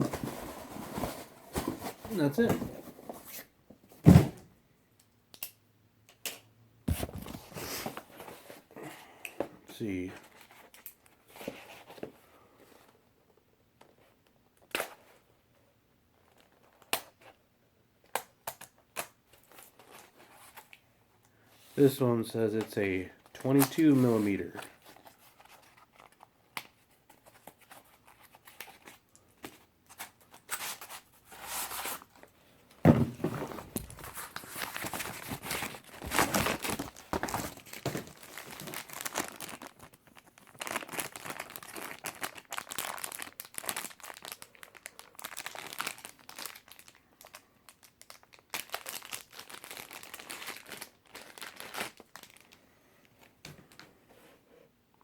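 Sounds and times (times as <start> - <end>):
packaging crinkling and tearing: 33.5 - 52.6.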